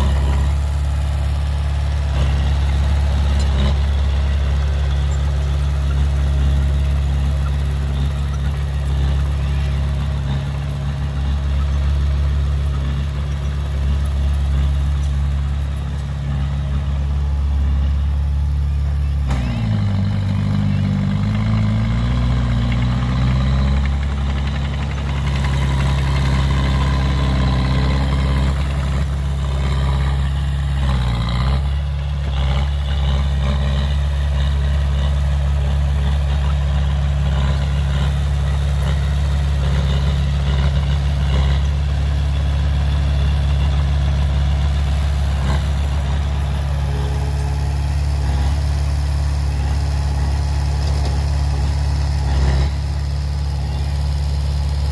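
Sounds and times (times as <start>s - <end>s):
heavy diesel engine running: 0.0s - 54.9s.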